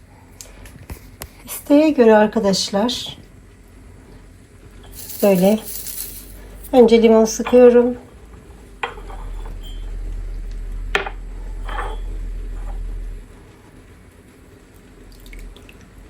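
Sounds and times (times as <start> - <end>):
low steady hum: 0.0 - 16.0
glass clinking: 4.8 - 7.9, 8.8 - 10.0, 11.0 - 12.9.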